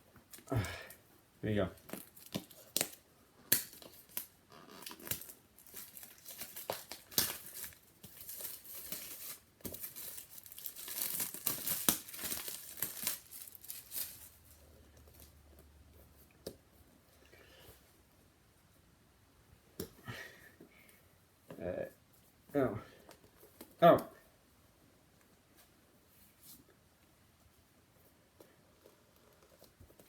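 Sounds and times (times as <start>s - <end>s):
packaging tearing and crinkling: 1.8s - 14.6s.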